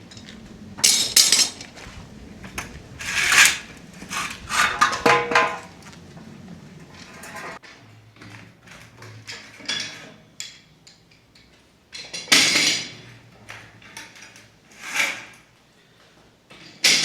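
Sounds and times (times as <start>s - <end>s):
hard objects clinking and knocking: 0.1s - 1.8s, 3.0s - 5.8s.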